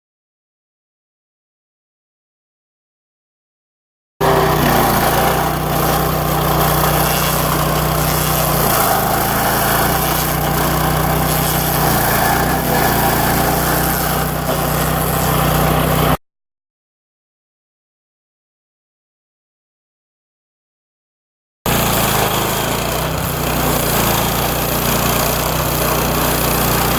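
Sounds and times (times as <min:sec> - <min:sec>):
stump grinder running: 0:04.2 - 0:16.2, 0:21.7 - 0:26.9.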